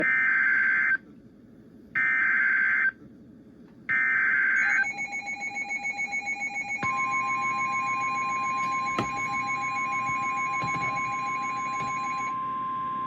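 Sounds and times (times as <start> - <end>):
pulsing alarm tone: 4.6 - 13.0.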